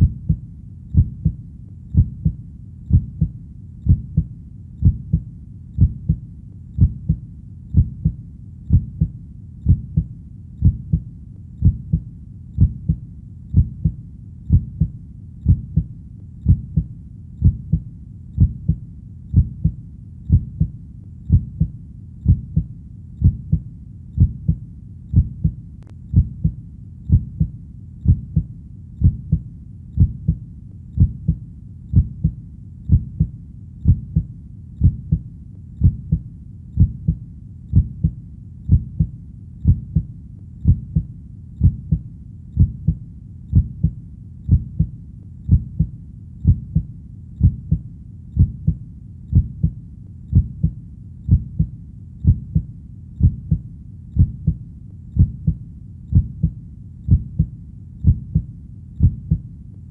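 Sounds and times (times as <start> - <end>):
heartbeat thumping: 0.0 - 6.2, 6.8 - 36.2, 36.8 - 59.5
faint low rumble: 0.0 - 59.9.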